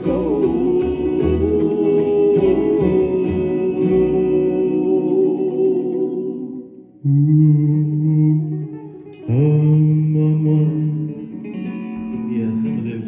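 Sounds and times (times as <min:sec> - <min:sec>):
bluegrass band holding chords: 0:00.0 - 0:06.8.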